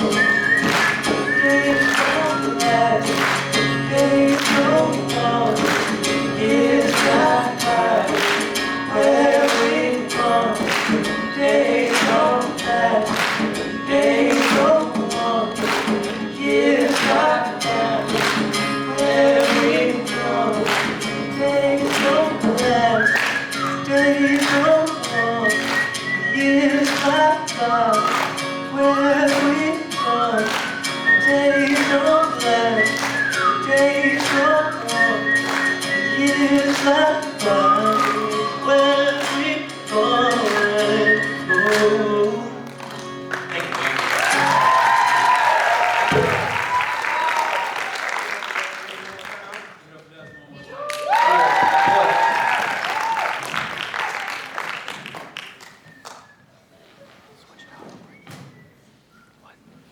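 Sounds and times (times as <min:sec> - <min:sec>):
percussive beat: 0:00.0 - 0:26.0, 0:45.9 - 0:47.0
person singing: 0:00.0 - 0:42.9.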